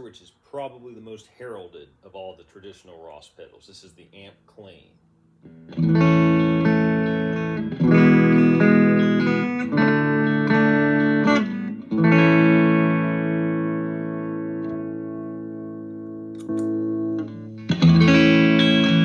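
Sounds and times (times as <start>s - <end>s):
clean electric guitar chords: 5.4s - 19.0s.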